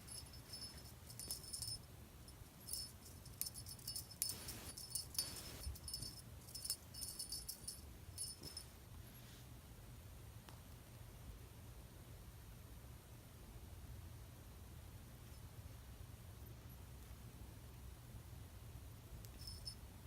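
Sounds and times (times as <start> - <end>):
small jingle bell shaken: 0.0 - 8.7, 19.3 - 19.8
soft rustle: 0.0 - 9.6.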